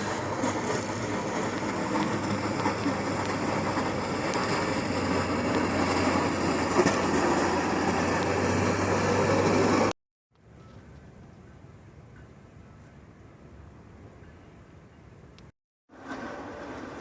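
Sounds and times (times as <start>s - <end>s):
truck rumbling past: 0.0s - 10.0s.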